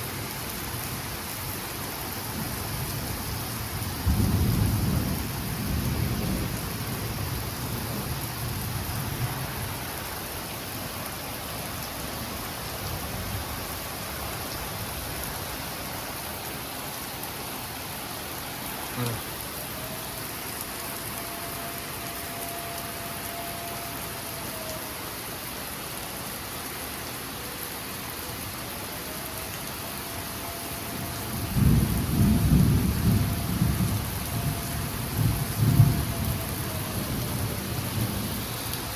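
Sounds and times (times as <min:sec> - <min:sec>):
heavy rain: 0:00.0 - 0:38.9
rolling thunder: 0:04.0 - 0:09.6, 0:31.4 - 0:38.4.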